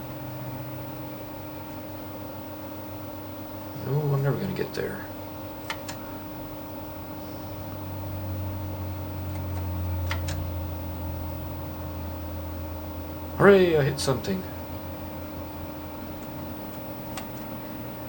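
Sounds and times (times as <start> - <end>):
low electrical hum: 0.0 - 18.0
keyboard key clicks: 5.6 - 6.0, 9.4 - 10.4.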